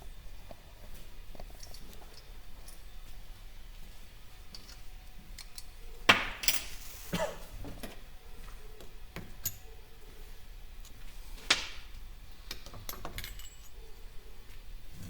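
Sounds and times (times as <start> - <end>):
metallic clinks of small parts: 12.5 - 13.8.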